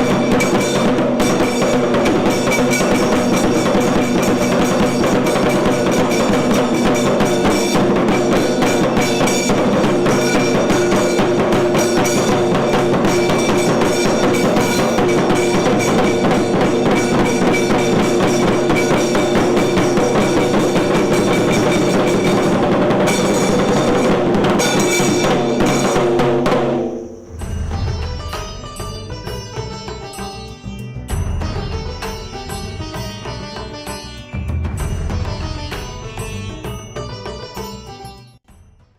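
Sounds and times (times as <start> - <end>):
dense drumming and percussion: 0.0 - 37.7.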